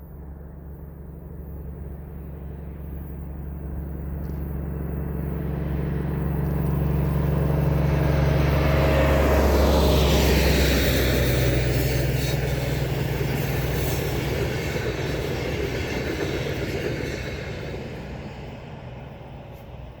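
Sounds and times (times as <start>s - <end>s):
diesel locomotive engine droning: 0.0s - 20.0s
train coaches rolling: 6.6s - 19.9s.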